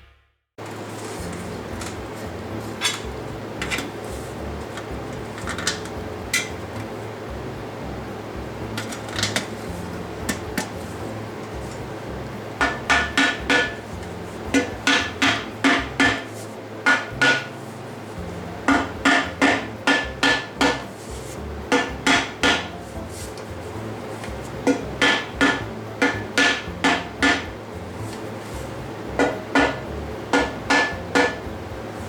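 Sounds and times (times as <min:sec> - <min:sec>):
hammer beating metal sheet: 0:12.6 - 0:17.6, 0:18.6 - 0:23.1, 0:24.2 - 0:27.6, 0:29.2 - 0:31.6.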